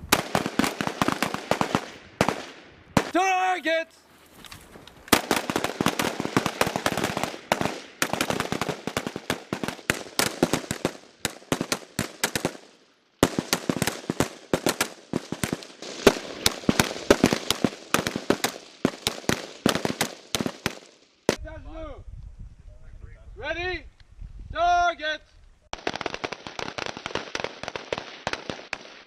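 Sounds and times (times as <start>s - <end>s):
rapid rifle shots echoing: 0.1s - 3.1s, 5.1s - 21.4s.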